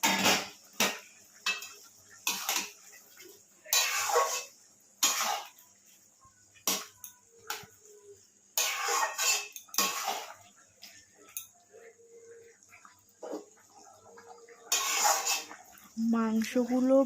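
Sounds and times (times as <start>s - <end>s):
metal spoon scraping a pan: 0.0s - 5.8s, 8.5s - 12.4s, 13.2s - 16.0s.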